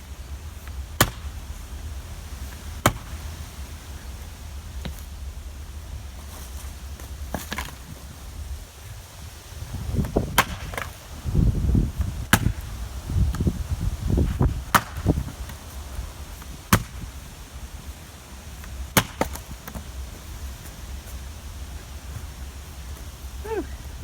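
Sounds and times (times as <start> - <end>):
low rumbling noise: 0.0 - 19.0
axe striking wood: 1.0 - 1.4, 2.8 - 3.2, 10.4 - 10.9, 12.3 - 12.6, 19.0 - 19.8.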